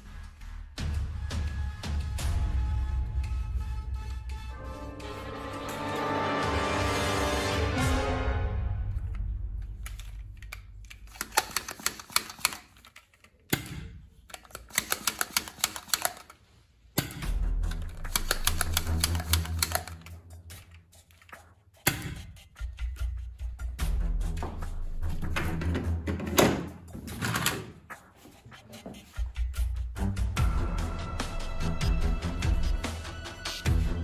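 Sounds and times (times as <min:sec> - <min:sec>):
music: 0:00.0 - 0:10.8, 0:17.1 - 0:21.0, 0:22.0 - 0:28.0, 0:29.1 - 0:34.0
rapid sharp mechanical clicks: 0:09.9 - 0:13.7, 0:14.3 - 0:16.4, 0:17.6 - 0:20.2.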